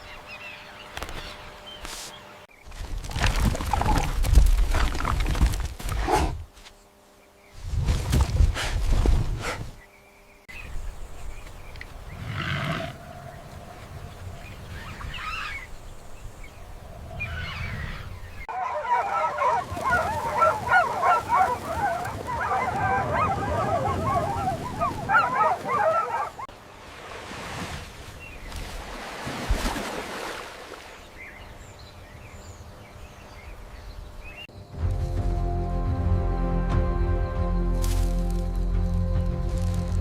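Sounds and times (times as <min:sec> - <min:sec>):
chattering animal calls: 0:12.1 - 0:15.8.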